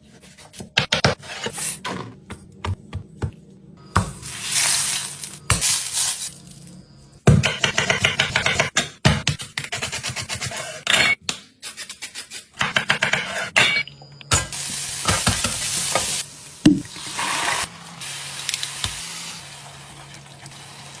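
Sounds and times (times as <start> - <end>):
food sizzling: 14.5 - 21.0.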